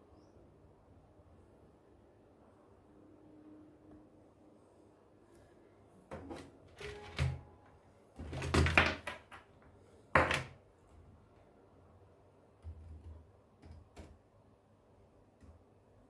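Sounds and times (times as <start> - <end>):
objects knocking and clattering: 8.2 - 9.5, 10.1 - 10.6.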